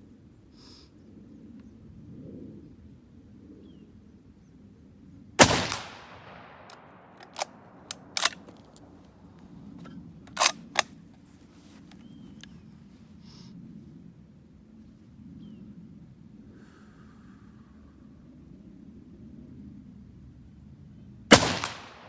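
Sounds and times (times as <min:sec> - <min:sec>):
rifle shot: 0:05.4 - 0:08.5, 0:21.3 - 0:22.0
rifle bolt clicking: 0:06.7 - 0:08.8, 0:10.3 - 0:10.9.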